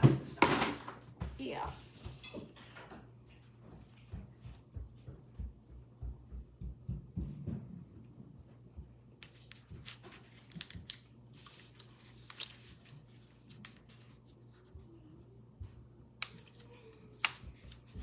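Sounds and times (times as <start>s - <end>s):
low steady hum: 0.0s - 18.0s
rustling and light clicks: 9.2s - 14.7s.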